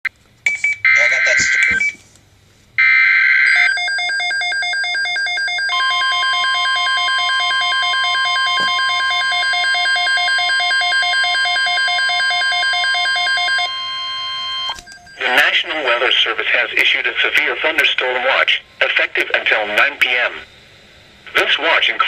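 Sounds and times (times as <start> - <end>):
steady single-pitched warning tone: 0.5 - 2.0, 2.8 - 22.0
pulsing electronic alarm beep: 2.8 - 15.5.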